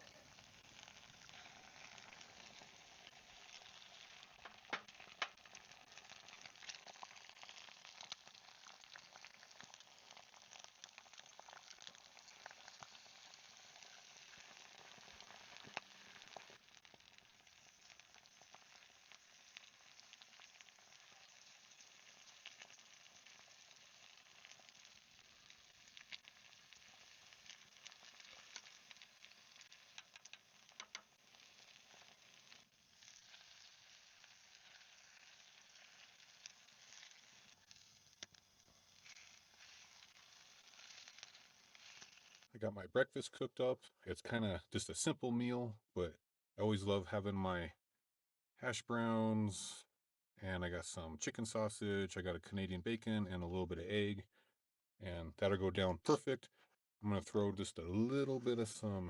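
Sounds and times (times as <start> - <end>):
food sizzling in a pan: 0.0 - 42.6.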